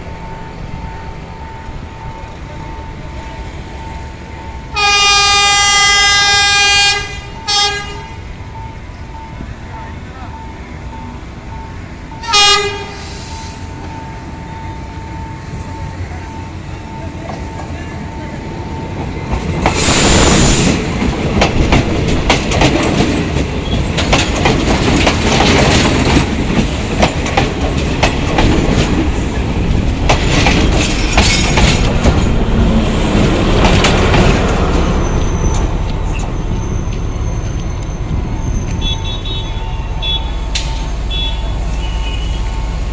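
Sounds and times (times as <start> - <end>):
train wheels clattering over rails: 18.8 - 39.1
high wheel squeal: 34.8 - 42.9.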